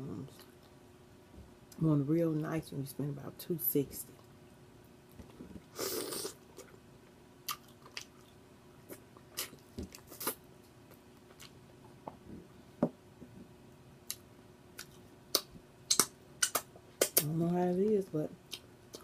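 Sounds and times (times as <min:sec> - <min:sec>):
sharp mouth clicks: 0:15.3 - 0:17.3
wet chewing and lip smacking: 0:18.5 - 0:19.0.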